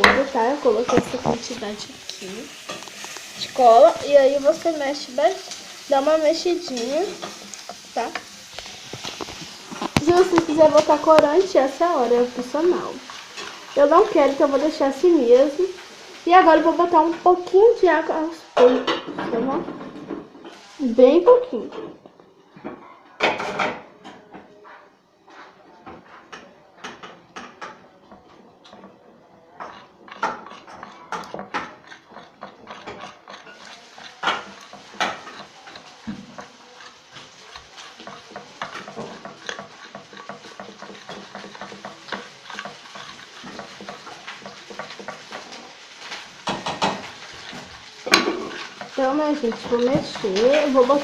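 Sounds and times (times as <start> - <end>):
spoon scraping a container: 0.7 - 15.9, 28.5 - 51.0.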